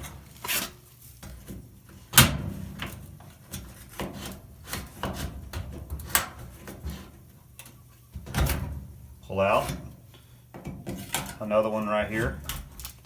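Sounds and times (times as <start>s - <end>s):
knife scraping sheet metal: 0.0s - 0.8s.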